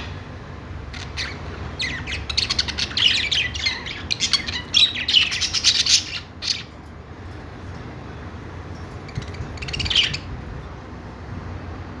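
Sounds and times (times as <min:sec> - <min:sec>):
budgies chirping: 0:00.0 - 0:07.6, 0:08.8 - 0:10.8
low background noise: 0:00.0 - 0:12.0.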